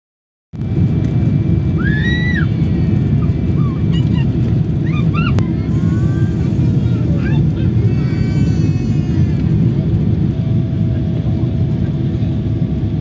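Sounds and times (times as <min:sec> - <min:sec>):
jet airliner rumble: 0:00.6 - 0:13.0.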